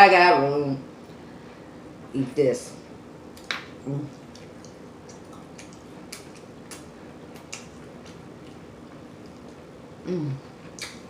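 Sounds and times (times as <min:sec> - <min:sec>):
mouth smacking and chewing: 0:04.1 - 0:09.6, 0:10.7 - 0:11.0.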